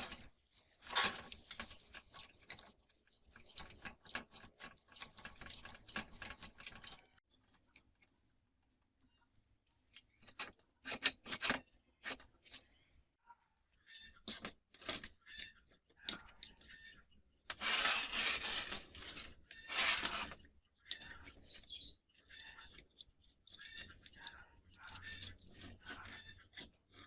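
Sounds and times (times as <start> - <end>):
rasping scrapes: 15.4 - 27.0.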